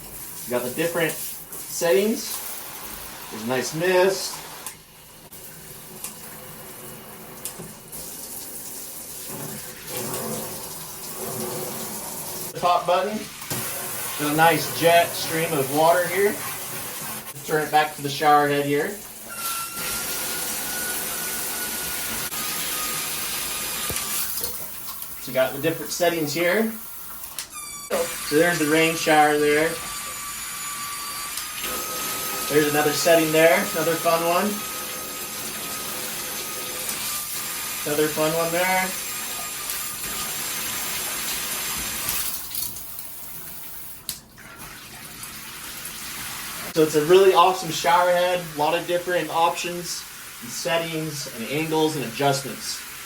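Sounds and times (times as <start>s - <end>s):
water spraying from shower head: 0.0s - 4.7s, 7.9s - 44.0s
high whistle: 19.3s - 24.3s, 27.5s - 28.3s, 29.8s - 35.2s.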